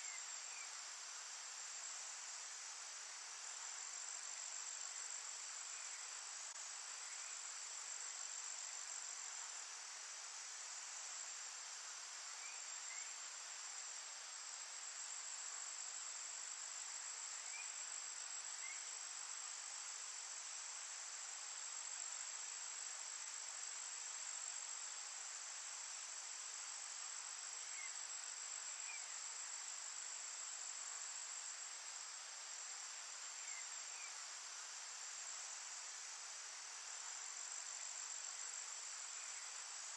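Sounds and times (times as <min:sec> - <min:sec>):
crickets trilling: 0:00.0 - 0:09.6, 0:10.4 - 0:39.9.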